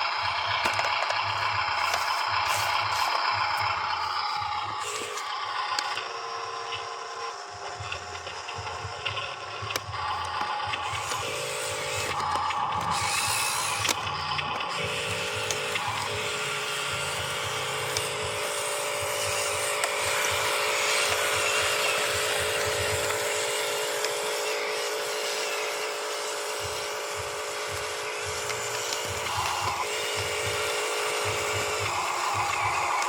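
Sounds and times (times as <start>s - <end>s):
small electric motor whining: 0.0s - 33.0s.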